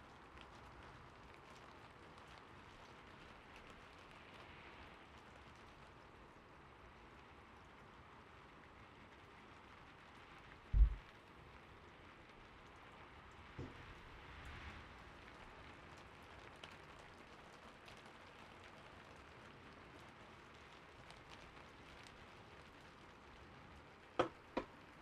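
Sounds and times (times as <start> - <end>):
gentle steady rain: 0.0 - 25.0
dull low thump: 10.7 - 11.0.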